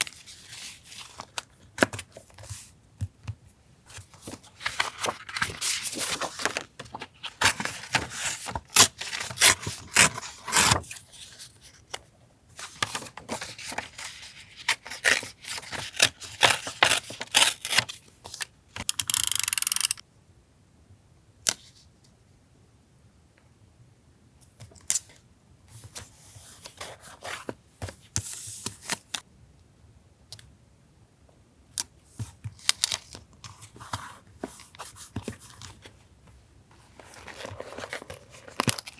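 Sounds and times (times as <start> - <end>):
paper tearing: 15.6 - 17.9.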